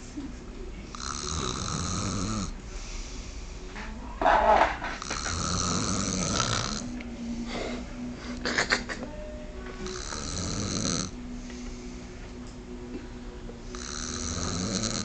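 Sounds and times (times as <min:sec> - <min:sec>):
person snoring: 0:00.9 - 0:02.6, 0:05.0 - 0:07.8, 0:09.8 - 0:11.2, 0:13.7 - 0:15.0.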